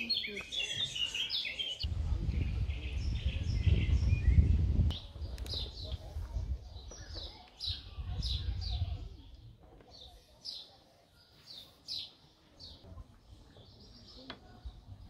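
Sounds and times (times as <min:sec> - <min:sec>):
songbird chirping: 0:00.0 - 0:15.0
low rumble of wind: 0:01.8 - 0:09.9, 0:12.9 - 0:15.0.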